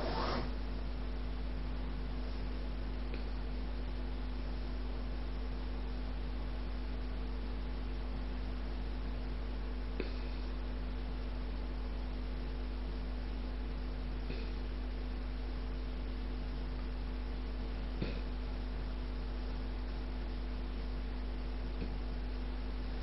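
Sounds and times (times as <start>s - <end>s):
hiss: 0.0s - 0.5s
low electrical hum: 0.0s - 23.0s.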